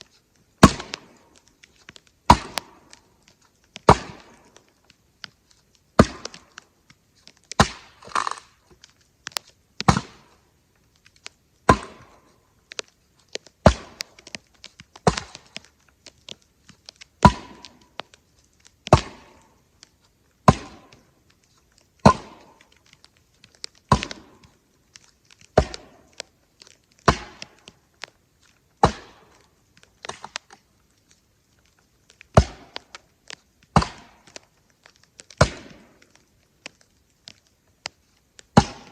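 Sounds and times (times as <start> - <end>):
sharp wooden knocks: 28.8 - 29.3, 38.6 - 38.9.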